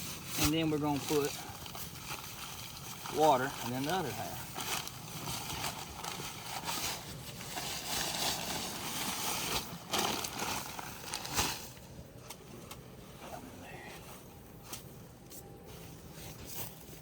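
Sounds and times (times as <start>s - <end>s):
dry concrete mix pouring: 0.0s - 11.4s.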